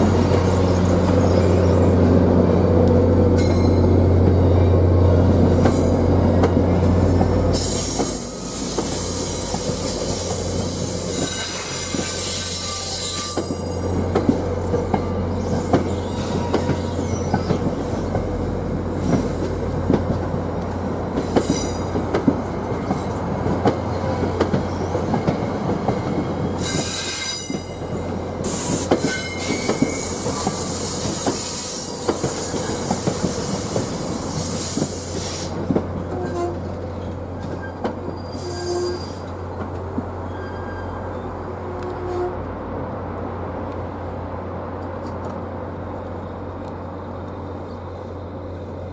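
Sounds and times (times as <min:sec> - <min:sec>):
train wheels clicking over rail joints: 0:05.4 - 0:38.2.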